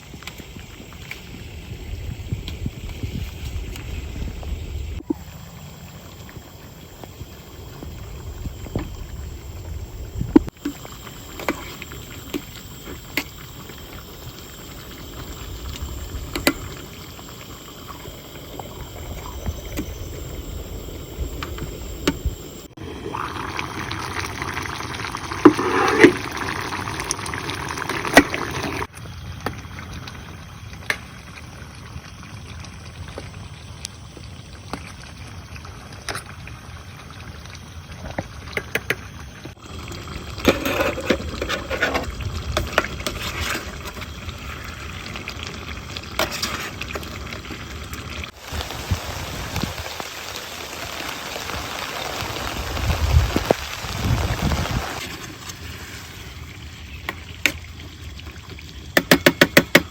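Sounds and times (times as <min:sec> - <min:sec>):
rain falling: 0:48.2 - 0:55.1
sharp raindrop impacts: 0:48.3 - 0:55.0.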